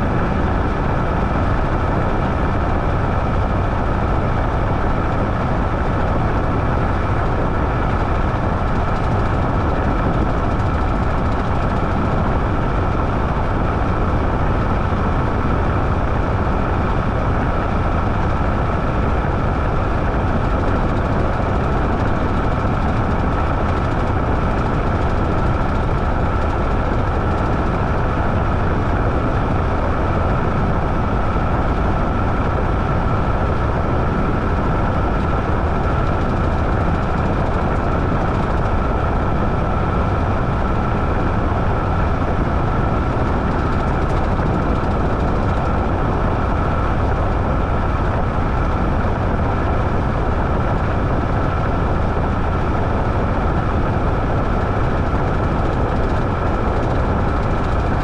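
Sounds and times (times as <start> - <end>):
constant high whine: 0.0 - 58.0
washing machine hum and rumble: 0.0 - 58.0.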